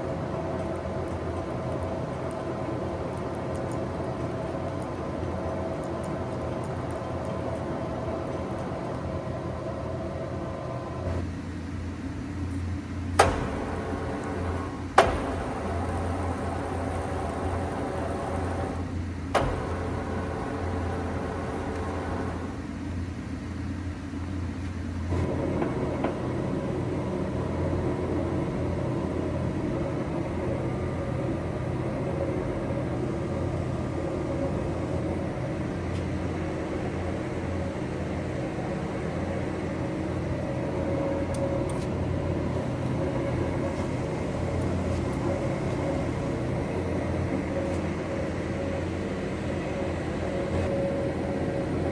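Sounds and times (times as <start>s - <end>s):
lathe machine hum: 13.0s - 23.9s.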